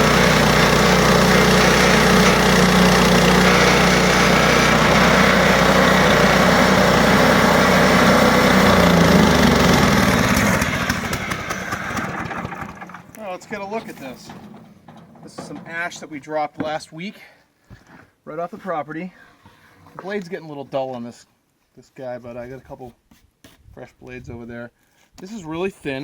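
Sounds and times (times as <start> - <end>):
gasoline engine running: 0.0 - 16.3.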